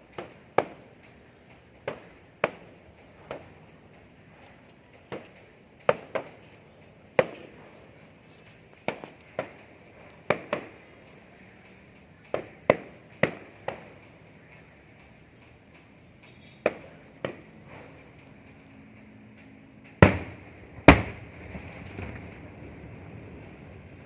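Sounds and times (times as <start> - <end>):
fireworks bangs: 1.8 - 3.8, 4.4 - 14.6, 16.3 - 18.1, 20.0 - 24.0.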